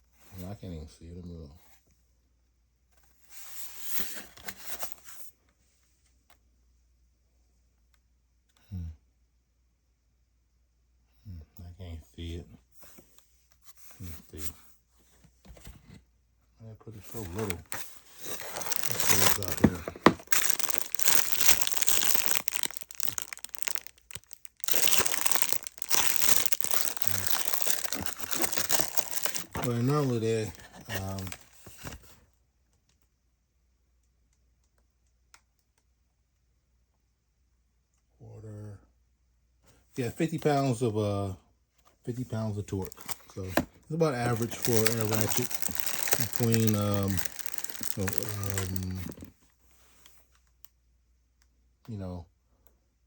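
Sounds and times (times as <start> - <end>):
box rustling: 17.0 - 31.4, 42.8 - 43.6, 44.2 - 49.3.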